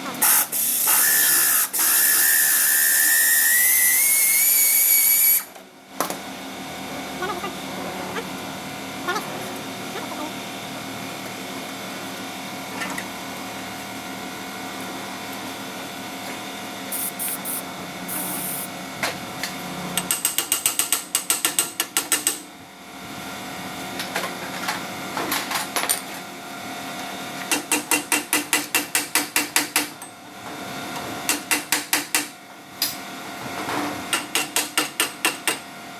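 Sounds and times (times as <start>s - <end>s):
ratchet wrench clicking: 0.2s - 5.3s, 16.9s - 18.7s.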